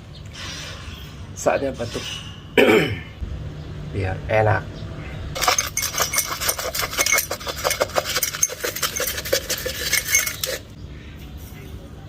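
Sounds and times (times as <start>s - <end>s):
metal spoon clinking in a glass: 5.4s - 10.7s.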